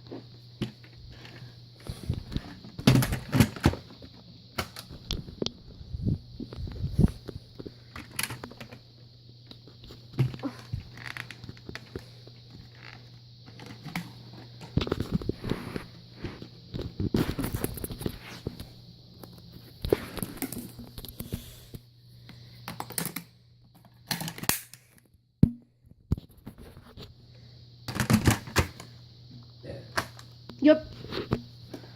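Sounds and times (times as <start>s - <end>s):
steady low hum: 0.0s - 24.0s
rustling and crinkling: 9.5s - 21.6s.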